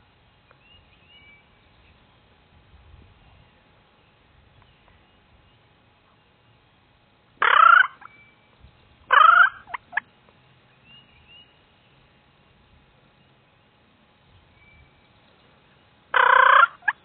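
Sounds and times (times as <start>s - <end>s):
turkey gobbling: 7.4s - 8.1s, 9.1s - 10.1s, 16.1s - 17.0s.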